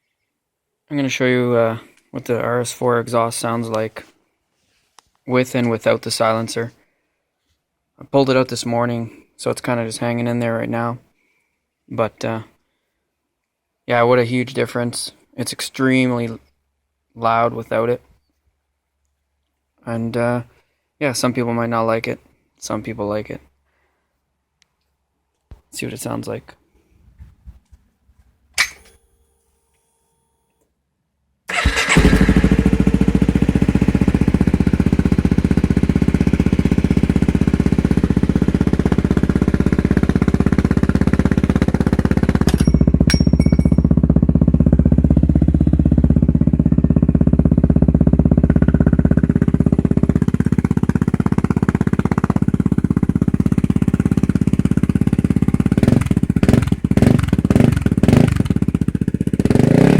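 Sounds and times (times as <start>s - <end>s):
motorcycle engine running: 31.5s - 59.9s.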